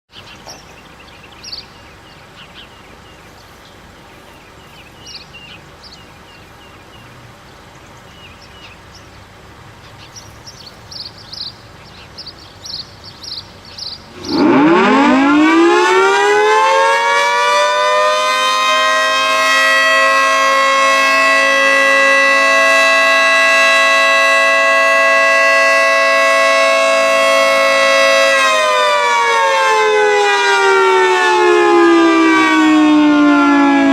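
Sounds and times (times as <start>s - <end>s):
two-tone siren wail: 14.2s - 33.9s.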